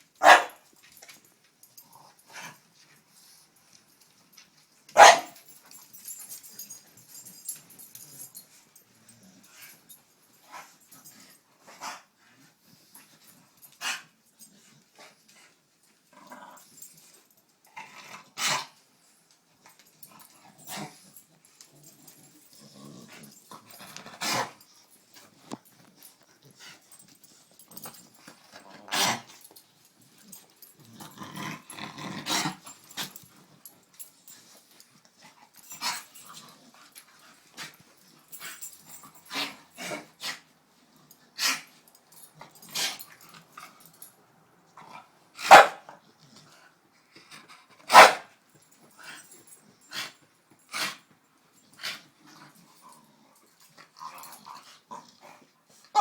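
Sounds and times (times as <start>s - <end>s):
dog yelps: 0.2s - 0.6s, 5.0s - 5.4s, 47.9s - 48.2s
dogs growling in play: 1.8s - 2.8s, 5.9s - 15.4s, 16.0s - 18.9s, 19.8s - 44.1s, 44.8s - 47.9s, 48.8s - 56.0s.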